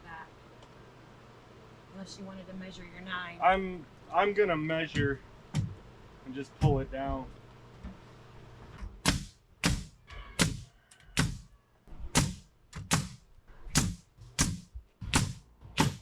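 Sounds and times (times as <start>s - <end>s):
hammer blows: 9.0s - 11.5s, 12.1s - 16.0s.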